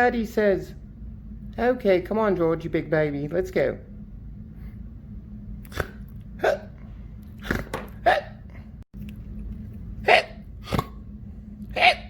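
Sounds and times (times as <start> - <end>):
person voicing hiccups: 5.6 - 6.8, 7.4 - 8.6, 10.0 - 11.0, 11.7 - 12.0.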